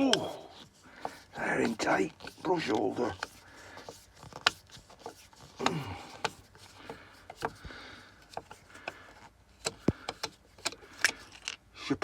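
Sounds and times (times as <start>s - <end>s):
scraping and rubbing: 0.0s - 11.5s
plastic and metal parts clicking: 0.0s - 11.6s.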